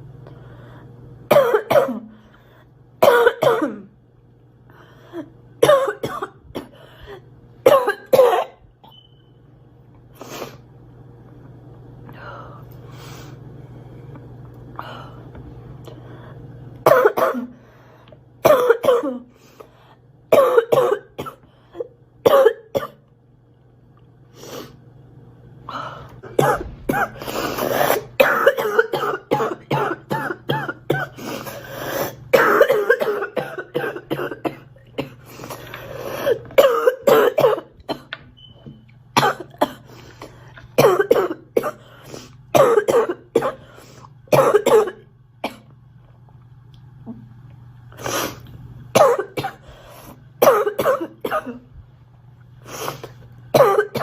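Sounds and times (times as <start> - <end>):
girl coughing: 1.3 - 2.1, 3.0 - 3.9, 5.6 - 6.8, 7.6 - 8.6, 16.8 - 17.6, 18.4 - 19.3, 20.3 - 21.4, 22.2 - 23.0, 26.3 - 31.2, 32.3 - 35.2, 36.2 - 38.2, 39.2 - 39.8, 40.8 - 41.9, 42.5 - 43.6, 44.3 - 45.6, 49.0 - 49.6, 50.4 - 51.7, 53.6 - 54.0.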